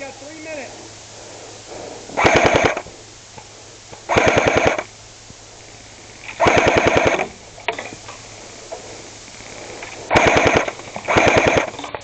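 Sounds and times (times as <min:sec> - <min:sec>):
airsoft gun full-auto bursts: 0:02.2 - 0:02.9, 0:04.1 - 0:04.9, 0:06.4 - 0:07.3, 0:10.1 - 0:11.9
scattered clicks: 0:02.2 - 0:04.9, 0:06.2 - 0:12.0.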